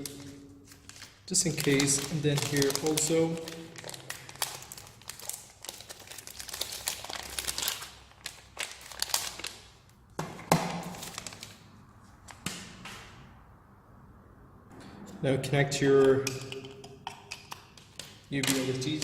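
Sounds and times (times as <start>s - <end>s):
plastic packaging crinkling: 0.0s - 10.0s, 10.7s - 11.6s.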